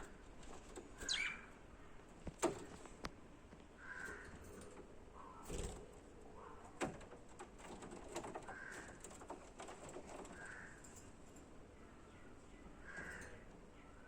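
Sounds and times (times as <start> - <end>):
budgerigars chattering: 1.0 - 1.5.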